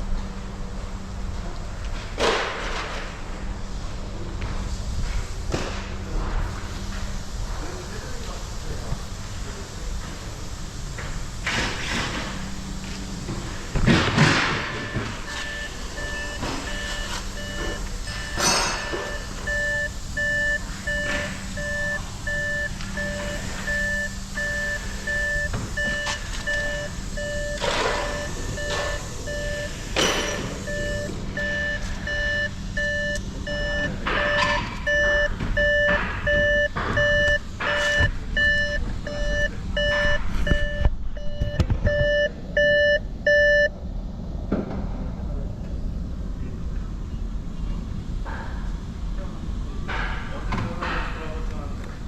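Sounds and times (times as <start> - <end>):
engine rumble: 0.0 - 52.0
reversing alarm beeping: 11.9 - 43.7.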